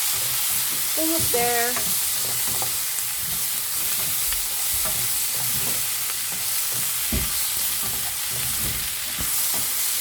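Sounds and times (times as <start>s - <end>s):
curry sizzling in a pan: 0.0s - 10.0s
utensil scraping a pan: 0.0s - 10.0s.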